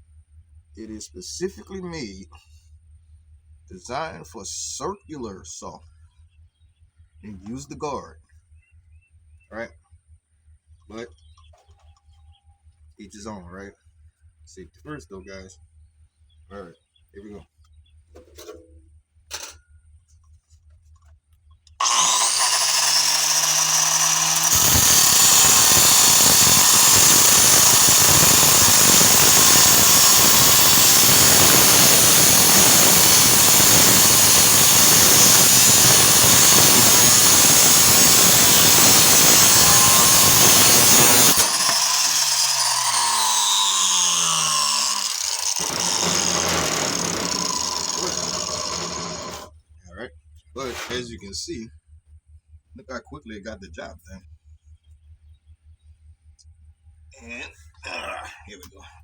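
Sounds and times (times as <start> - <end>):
grinder cutting metal: 21.8 - 49.5.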